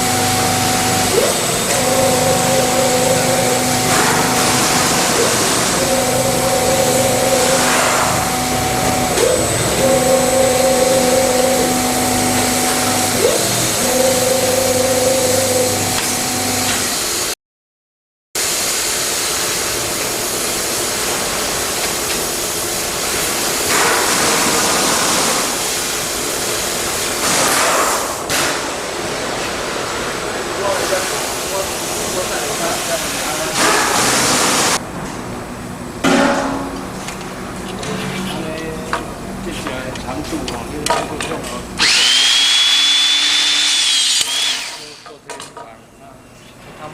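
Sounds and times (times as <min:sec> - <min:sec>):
lathe machine hum: 0:00.0 - 0:17.3, 0:41.6 - 0:45.1.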